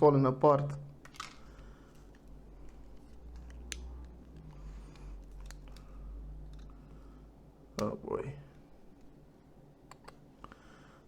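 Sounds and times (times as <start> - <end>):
brittle plastic clicks and cracks: 1.0 - 6.8.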